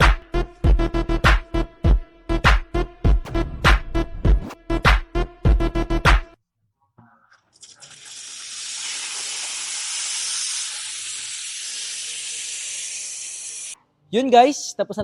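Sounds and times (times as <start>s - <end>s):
steam wand hissing: 8.4s - 13.8s.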